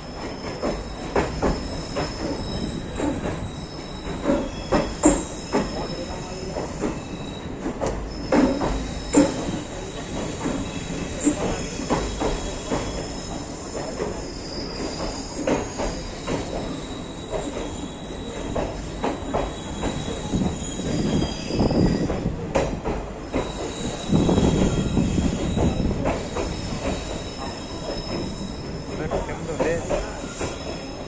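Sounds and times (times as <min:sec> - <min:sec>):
high wheel squeal: 0:00.0 - 0:22.1, 0:23.2 - 0:31.0
train rumbling on track: 0:00.0 - 0:31.0.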